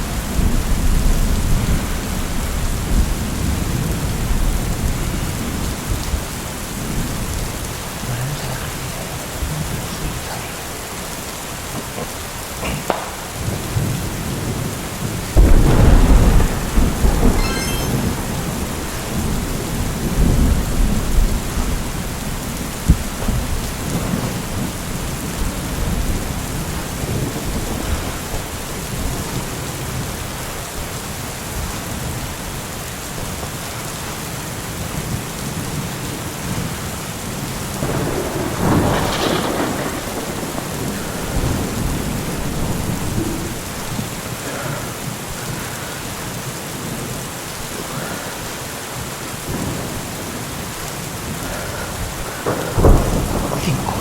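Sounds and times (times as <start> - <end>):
steady rain: 0.0 - 54.0
rolling thunder: 12.9 - 30.1, 37.7 - 44.3, 49.4 - 54.0.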